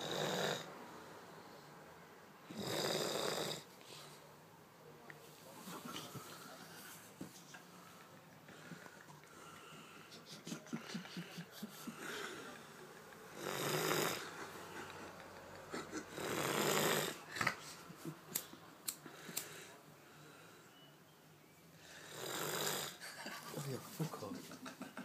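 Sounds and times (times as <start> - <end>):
man snoring loudly: 0.0 - 0.7, 2.5 - 3.6, 13.3 - 14.3, 16.1 - 17.2, 22.0 - 23.0.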